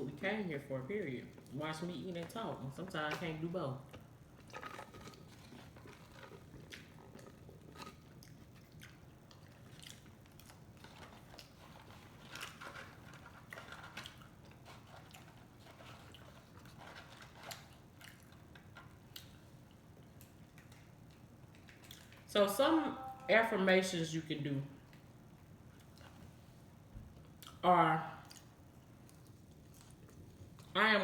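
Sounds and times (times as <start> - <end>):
person chewing food: 3.8 - 22.3, 24.8 - 27.6, 28.2 - 30.8
soft crunches and mouth clicks: 3.8 - 22.3, 24.9 - 27.6, 28.2 - 30.8.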